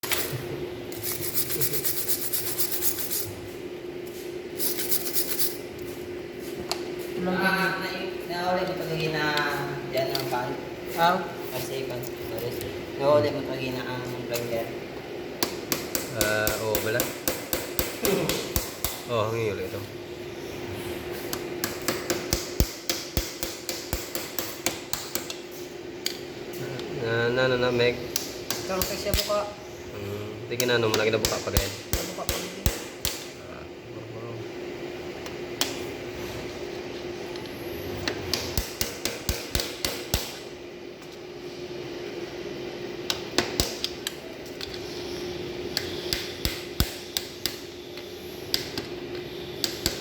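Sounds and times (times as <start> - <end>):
steady hum: 0.0 - 50.0
hammer tapping on metal: 15.4 - 19.1, 21.6 - 25.4, 30.6 - 33.3, 38.3 - 40.4, 45.8 - 47.7, 49.6 - 50.0.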